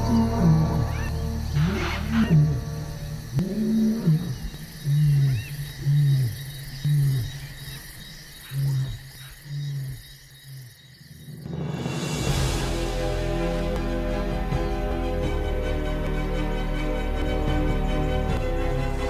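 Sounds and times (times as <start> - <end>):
lion roaring and grunting: 0.0 - 7.4.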